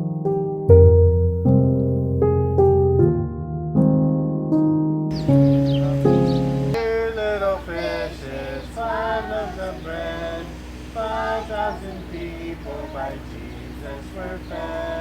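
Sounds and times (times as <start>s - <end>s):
voices singing: 5.1s - 15.0s
steady low hum: 5.2s - 15.0s.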